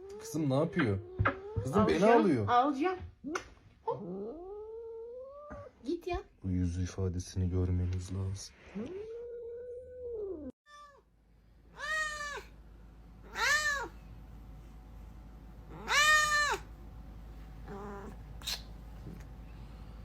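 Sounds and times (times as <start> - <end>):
cat meowing: 10.2 - 11.0, 11.7 - 12.5, 13.2 - 14.0, 15.7 - 16.7, 17.7 - 18.2.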